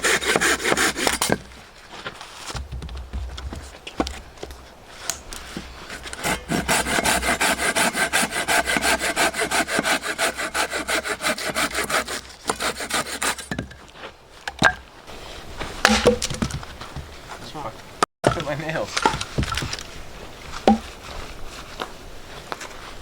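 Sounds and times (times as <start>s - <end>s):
hand saw cutting wood: 0.0s - 1.5s, 5.1s - 13.6s.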